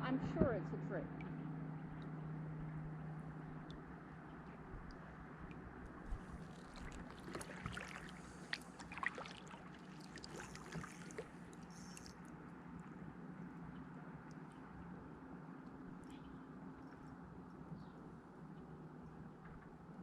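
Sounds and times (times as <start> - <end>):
steady low hum: 0.0 - 20.0
light water sounds: 0.2 - 20.0.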